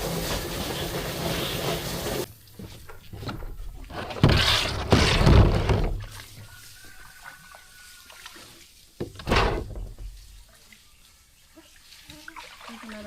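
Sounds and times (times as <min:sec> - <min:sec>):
loud thumping handling noises: 0:09.0 - 0:10.1.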